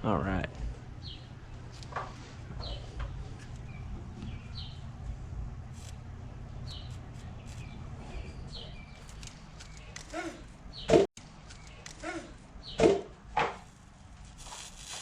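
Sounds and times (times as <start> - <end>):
steady low hum: 0.0 - 14.4
small bird chirping: 2.6 - 4.9, 6.6 - 12.0.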